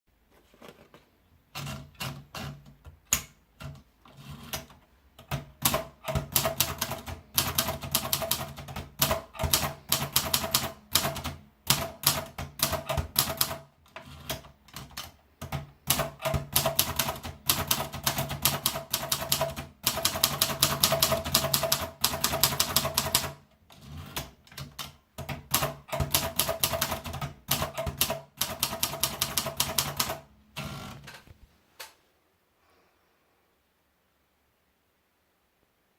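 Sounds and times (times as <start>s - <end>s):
typewriter key strikes: 14.3s - 23.4s, 24.2s - 30.2s.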